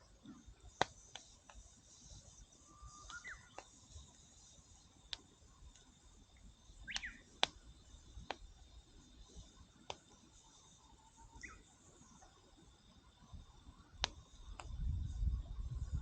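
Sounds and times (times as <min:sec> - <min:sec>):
faint steady hiss: 0:00.0 - 0:16.0
campfire popping and cracking: 0:00.3 - 0:02.0, 0:02.9 - 0:10.8, 0:13.9 - 0:14.9
bird chirping: 0:02.2 - 0:04.8, 0:06.6 - 0:08.0, 0:11.1 - 0:12.3.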